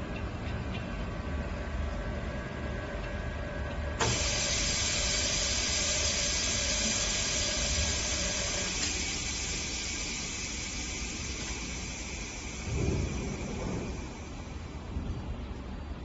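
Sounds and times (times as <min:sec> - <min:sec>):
low machine hum: 0:00.0 - 0:16.0
machine hissing with rushing air: 0:04.0 - 0:15.4.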